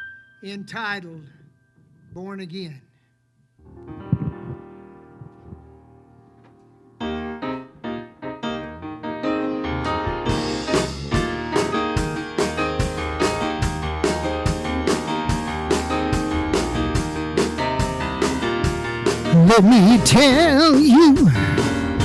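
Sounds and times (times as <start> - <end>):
keyboard chords: 3.7 - 22.0
live band playing a steady beat: 10.3 - 22.0.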